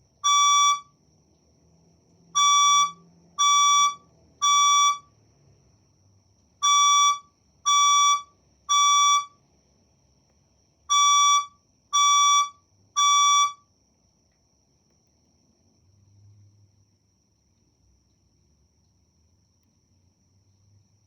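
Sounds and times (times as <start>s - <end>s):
faint high whine: 0.0s - 1.0s, 2.4s - 5.2s, 6.6s - 9.4s, 10.9s - 13.7s
fire alarm beeps: 0.2s - 0.9s, 2.4s - 5.1s, 6.6s - 9.4s, 10.9s - 13.6s.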